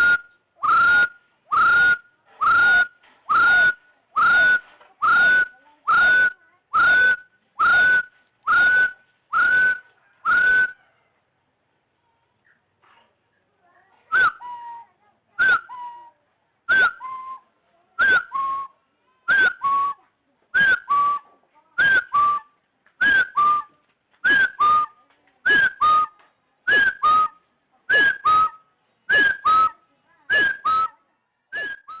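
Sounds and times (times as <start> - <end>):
junglefowl lure call: 31.6 - 32.0.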